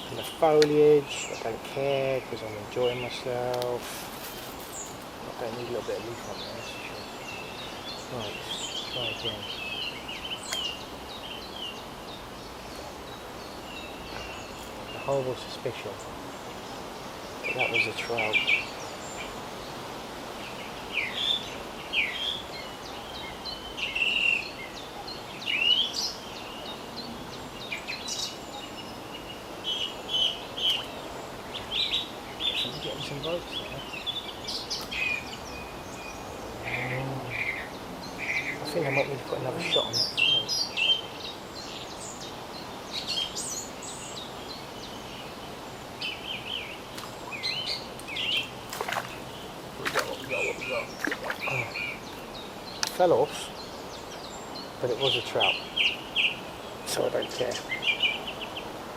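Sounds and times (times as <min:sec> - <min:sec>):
outdoor background hiss: 0:00.0 - 0:58.9
songbirds chirping: 0:00.0 - 0:58.9.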